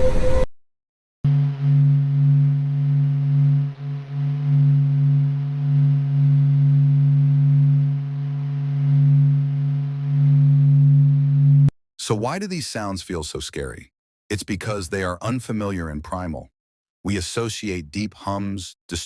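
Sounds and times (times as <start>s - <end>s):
deep steady hum of held tones: 1.3s - 11.7s.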